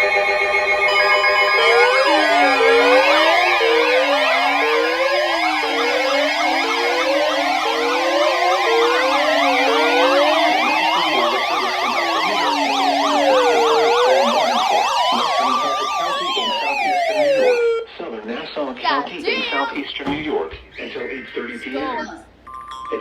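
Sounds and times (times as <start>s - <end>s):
siren yelping sweeps: 0.0s - 17.9s
sirens wailing: 0.0s - 17.9s.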